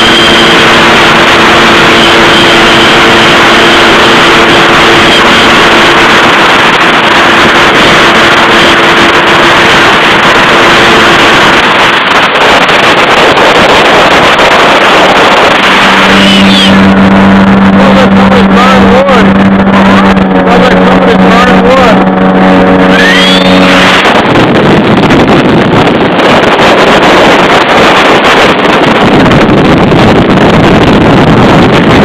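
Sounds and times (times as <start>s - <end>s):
low steady engine note: 0.0s - 12.8s, 14.6s - 26.4s
jet ski engine hum: 0.0s - 32.0s
wind and water rushing: 0.0s - 32.0s.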